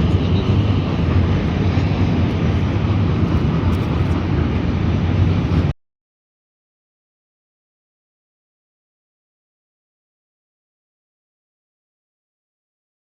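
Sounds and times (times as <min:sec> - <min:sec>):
engine running with low hum: 0:00.0 - 0:05.7.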